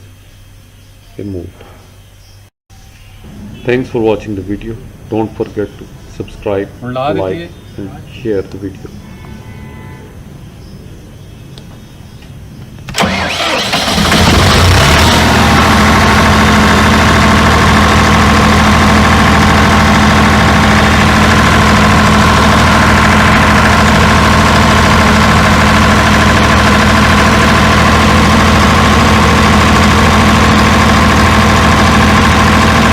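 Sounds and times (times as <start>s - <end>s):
generator engine running: 3.0s - 9.0s, 12.8s - 32.9s.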